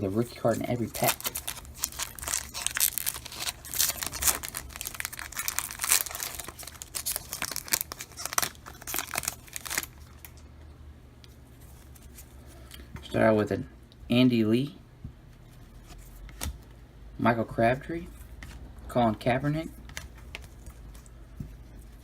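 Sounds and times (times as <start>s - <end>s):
wrapper tearing and crinkling: 0.4s - 10.4s.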